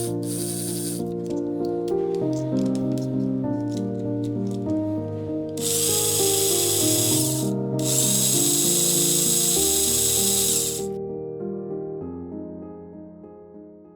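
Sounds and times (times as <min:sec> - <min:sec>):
electric drill whining: 0:00.0 - 0:01.0, 0:05.6 - 0:10.9
background music: 0:00.0 - 0:11.2.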